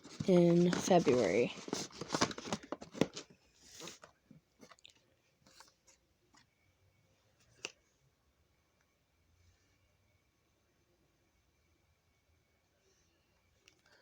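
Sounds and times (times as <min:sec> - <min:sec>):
packaging rustling and clicking: 0:00.0 - 0:05.7.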